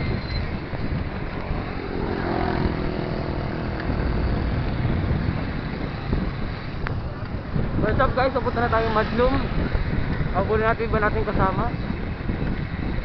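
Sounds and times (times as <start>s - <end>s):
motor vehicle passing: 0.0s - 10.3s
wind buffeting microphone: 0.0s - 13.0s.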